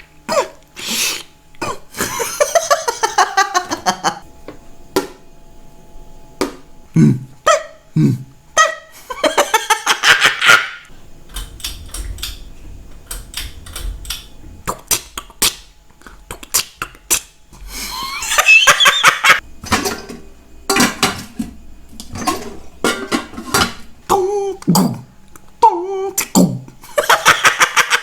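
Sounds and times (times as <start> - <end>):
breathy hissing: 0.3 - 2.2, 17.6 - 18.3
mouth clicks and smacks: 14.6 - 17.4.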